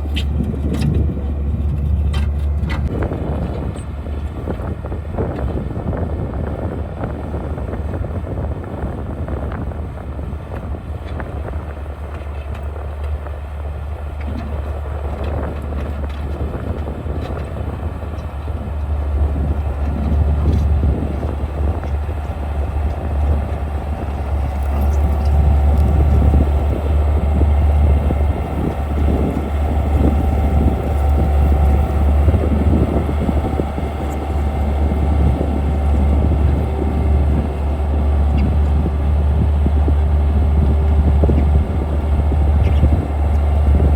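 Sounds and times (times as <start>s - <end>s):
skid steer engine under load: 0.0s - 43.9s.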